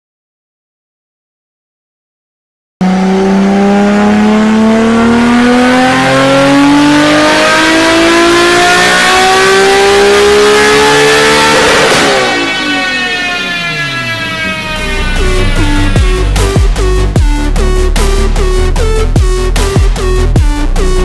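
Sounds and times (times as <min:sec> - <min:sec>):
car engine accelerating hard: 0:02.8 - 0:21.0
music: 0:14.7 - 0:21.0.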